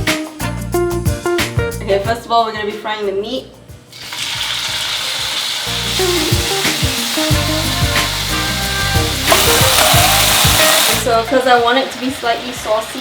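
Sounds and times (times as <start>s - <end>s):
meat sizzling in hot oil: 3.9s - 13.0s.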